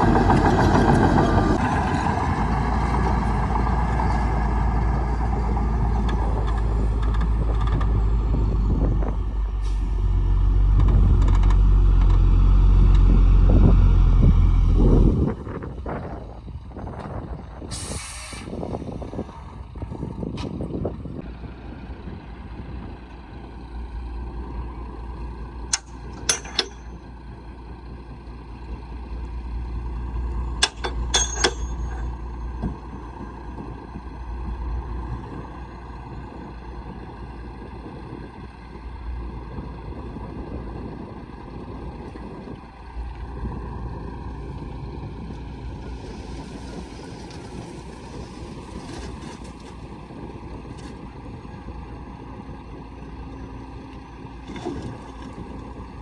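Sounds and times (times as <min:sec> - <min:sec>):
heavy machinery engines running: 0:00.0 - 0:56.0
short hiss: 0:17.7 - 0:18.5
sharp metallic clanks: 0:25.7 - 0:27.0, 0:30.6 - 0:32.3.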